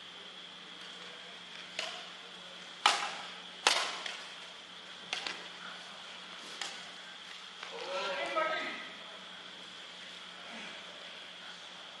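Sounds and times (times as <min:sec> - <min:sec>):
racket hitting shuttlecock: 0:02.8 - 0:04.2.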